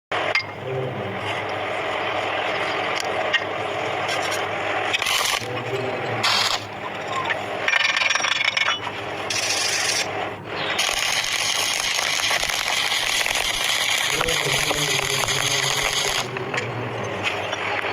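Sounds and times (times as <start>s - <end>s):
harsh rasping on iron: 7.9s - 10.2s.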